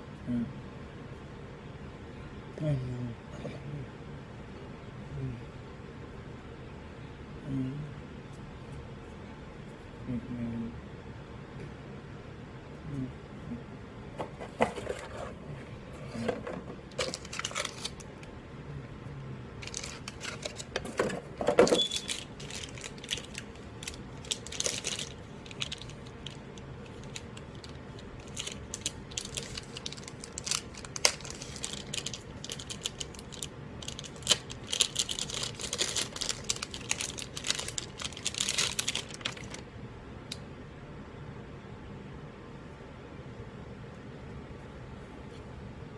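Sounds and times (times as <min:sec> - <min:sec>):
packaging rustling: 0:14.2 - 0:18.3, 0:19.6 - 0:39.6.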